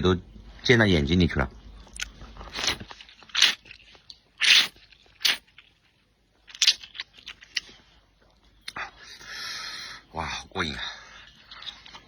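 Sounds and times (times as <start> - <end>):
chewing: 1.8 - 8.8, 11.1 - 12.0
noodles being slurped: 1.9 - 7.8.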